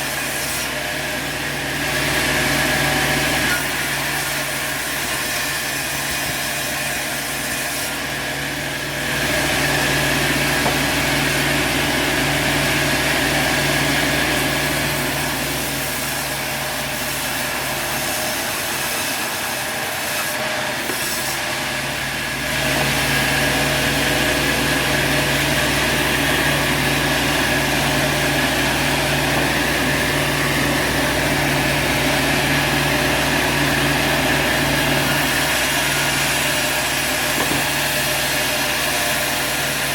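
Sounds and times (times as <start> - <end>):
noisy saw: 0.0 - 39.9
sawmill machinery low hum: 0.0 - 39.9.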